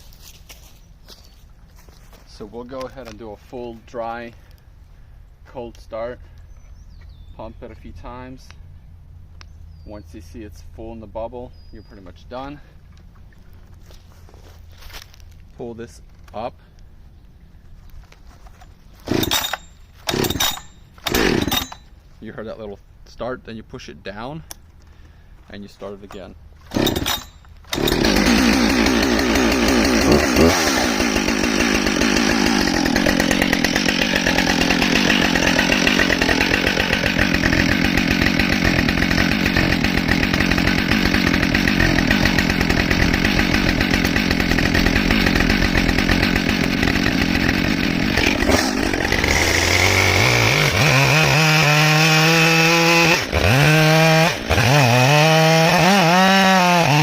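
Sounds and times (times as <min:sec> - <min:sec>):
chainsaw running and revving: 0:19.0 - 0:21.9, 0:26.6 - 0:57.0.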